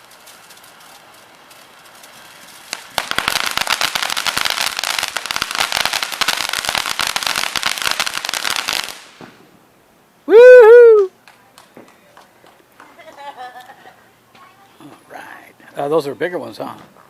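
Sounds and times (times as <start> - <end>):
rapid firecracker pops: 0.0 - 9.6.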